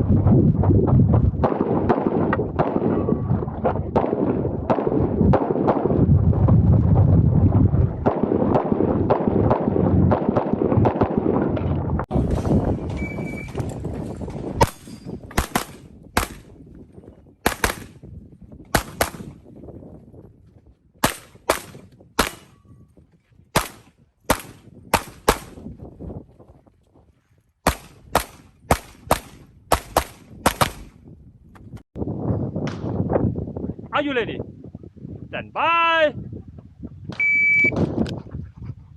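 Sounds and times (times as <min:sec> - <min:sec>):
handgun shots: 0:14.6 - 0:16.5, 0:17.5 - 0:18.0, 0:18.8 - 0:19.3, 0:21.0 - 0:22.6, 0:23.6 - 0:25.6, 0:27.7 - 0:30.9.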